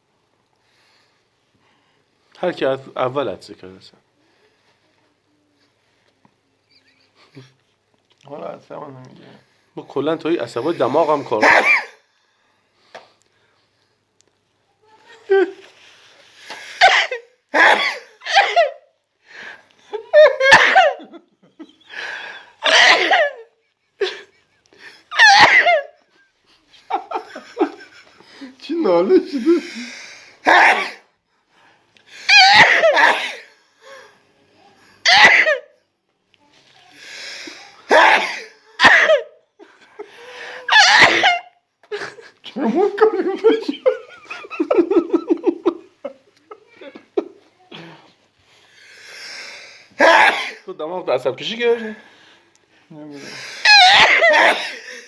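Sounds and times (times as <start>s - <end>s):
laughter: 6.7s - 7.5s, 19.8s - 22.0s, 26.4s - 29.8s, 41.9s - 47.5s
loud sneezes: 10.9s - 12.0s, 16.4s - 18.9s, 20.2s - 21.2s, 22.6s - 23.5s, 25.1s - 26.0s, 30.4s - 31.1s, 32.2s - 33.5s, 35.0s - 35.8s, 37.2s - 39.4s, 40.6s - 41.6s, 49.4s - 50.7s, 53.2s - 55.0s.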